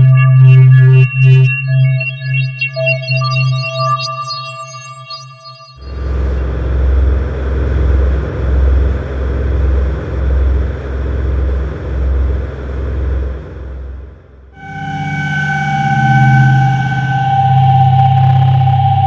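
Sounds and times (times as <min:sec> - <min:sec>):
deep rumbling drone: 0:00.0 - 0:01.5, 0:05.8 - 0:19.0.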